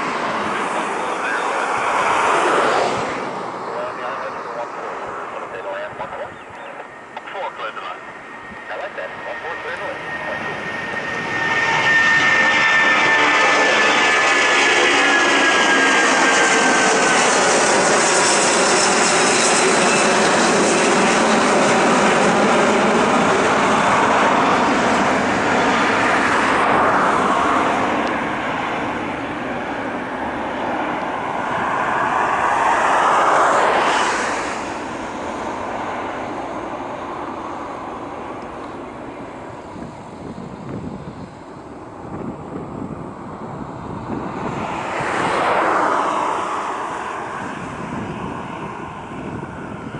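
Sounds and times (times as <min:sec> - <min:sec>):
jet airliner roaring past: 0:00.0 - 0:49.9.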